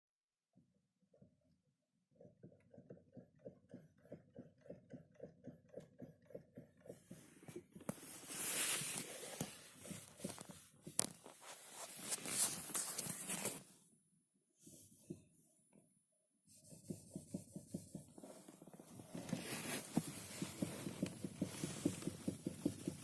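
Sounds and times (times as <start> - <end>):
steering knocking: 19.1 - 23.0.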